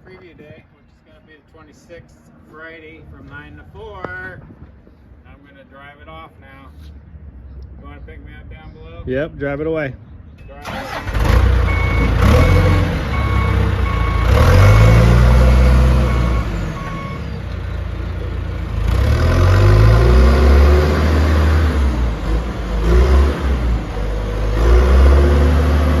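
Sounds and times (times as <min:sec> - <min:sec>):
diesel engine revving: 0:10.6 - 0:26.0
backup alarm beeping: 0:11.6 - 0:15.3, 0:16.0 - 0:17.5.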